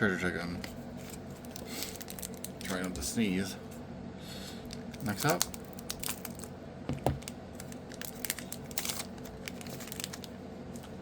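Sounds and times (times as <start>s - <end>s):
cards rustling: 0.6s - 2.9s, 4.7s - 10.9s
foil wrapper crinkling: 1.0s - 3.1s, 4.6s - 11.0s.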